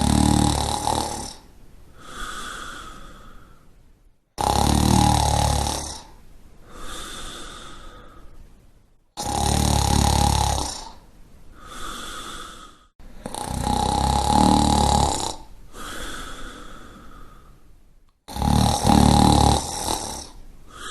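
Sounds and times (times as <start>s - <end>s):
person snoring: 0.0s - 3.6s, 4.4s - 8.3s, 9.2s - 11.0s, 11.6s - 17.5s, 18.3s - 20.9s
quiet breath: 1.2s - 4.0s, 5.9s - 8.8s, 10.8s - 13.5s, 15.3s - 17.9s, 19.7s - 20.9s.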